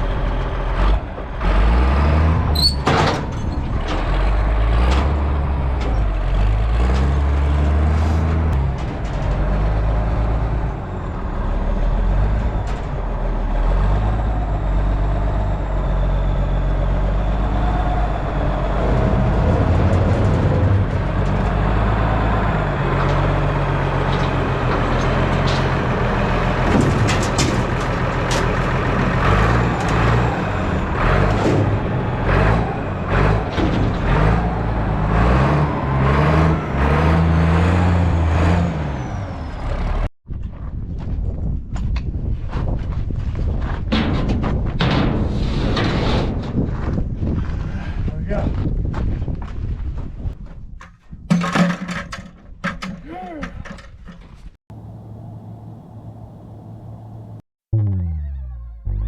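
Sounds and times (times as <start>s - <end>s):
heavy vehicle engine revving: 0.0s - 40.1s, 54.7s - 59.0s
metal clanks and knocks: 18.8s - 30.2s, 31.0s - 34.5s, 43.6s - 47.0s, 50.8s - 55.1s.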